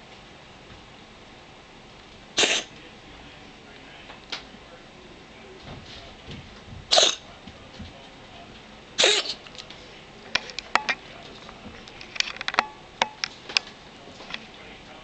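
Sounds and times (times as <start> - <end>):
cat sneezing: 2.4 - 2.7, 6.9 - 7.3, 9.0 - 9.4.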